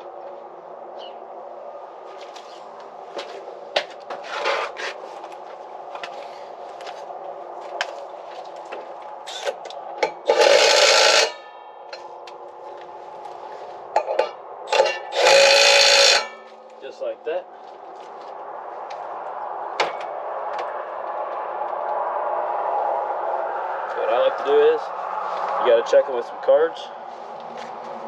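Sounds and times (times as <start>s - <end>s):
impact wrench running: 10.3s - 11.4s, 14.7s - 16.4s.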